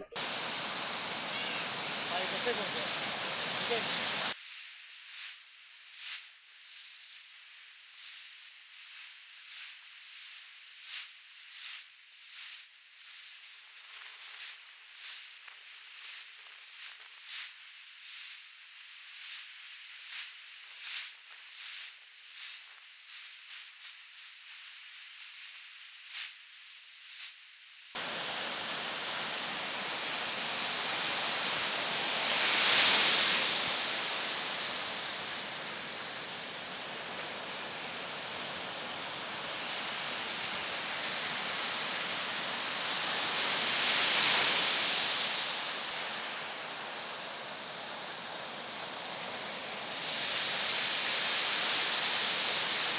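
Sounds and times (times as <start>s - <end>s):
high-pitched hissing pulses: 3.7s - 28.0s.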